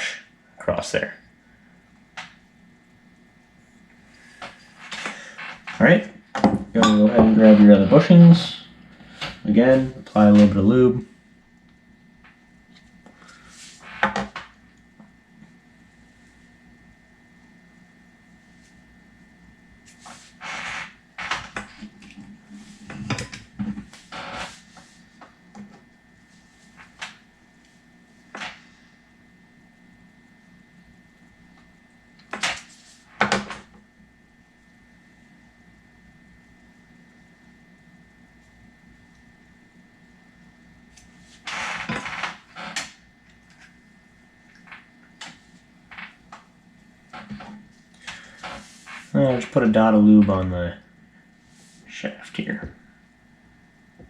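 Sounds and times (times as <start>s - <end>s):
scraping rustle on workbench: 19.8s - 20.9s, 48.1s - 49.2s.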